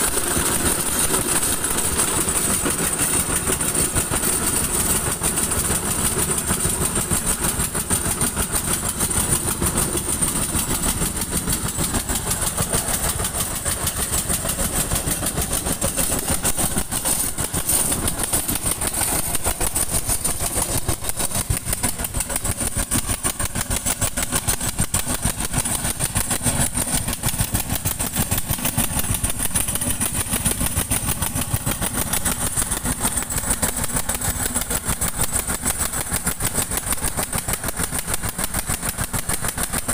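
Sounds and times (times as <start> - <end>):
machine engine running: 0.0 - 39.9.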